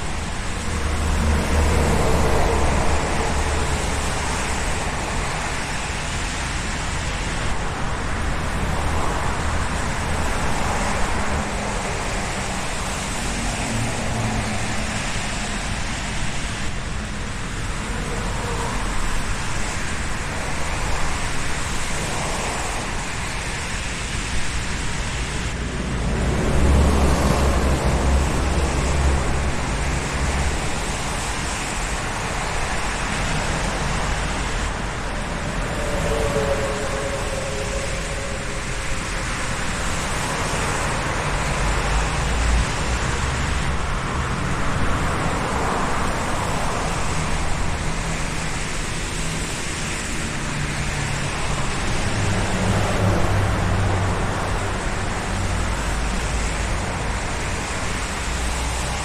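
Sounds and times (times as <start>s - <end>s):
heavy vehicle passing: 0.0s - 7.3s, 24.6s - 48.4s
cars passing: 0.0s - 59.0s.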